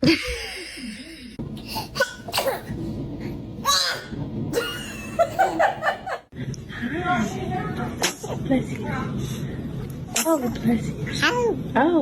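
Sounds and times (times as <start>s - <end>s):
baby sneezing: 2.0s - 2.7s.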